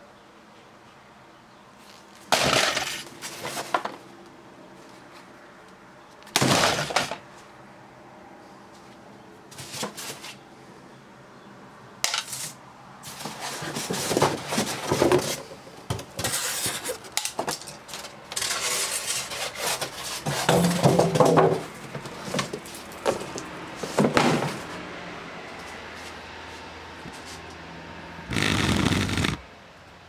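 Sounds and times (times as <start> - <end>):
hard objects clattering: 13.3 - 24.7.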